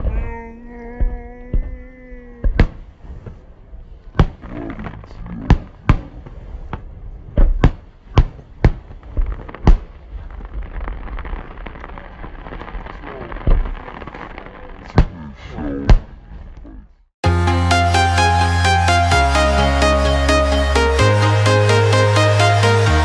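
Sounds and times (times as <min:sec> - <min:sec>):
fireworks bangs: 0:01.0 - 0:16.6.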